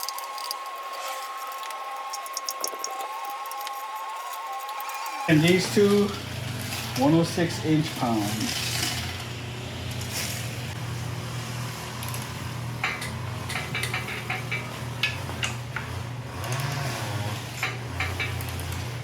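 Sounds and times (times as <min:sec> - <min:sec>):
torque wrench ratcheting: 0:00.0 - 0:06.0.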